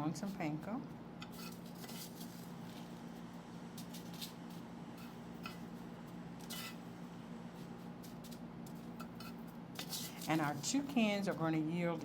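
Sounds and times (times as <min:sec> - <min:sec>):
spoons scraping and clicking: 0:01.2 - 0:02.9, 0:03.8 - 0:05.8, 0:06.4 - 0:06.9, 0:07.6 - 0:11.4.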